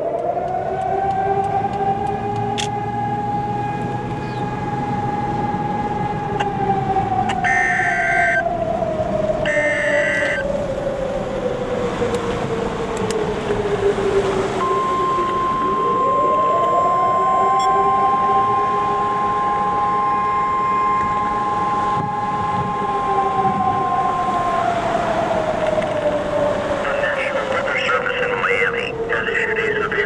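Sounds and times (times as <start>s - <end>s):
warning siren wailing: 0.0s - 30.0s
shrill electronic bursts: 7.4s - 8.4s, 9.5s - 10.4s, 14.6s - 24.4s
high alert tone: 9.5s - 10.4s, 14.6s - 23.5s.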